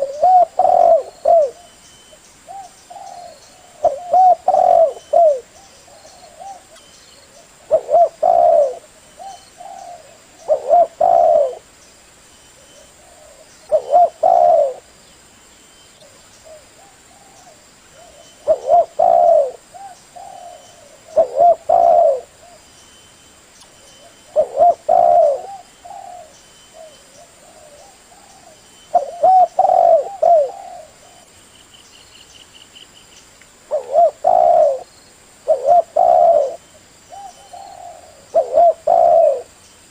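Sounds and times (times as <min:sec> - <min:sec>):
dove cooing: 0:00.0 - 0:01.8, 0:02.5 - 0:11.7, 0:12.6 - 0:14.9, 0:16.0 - 0:22.6, 0:24.0 - 0:31.3, 0:33.7 - 0:39.6.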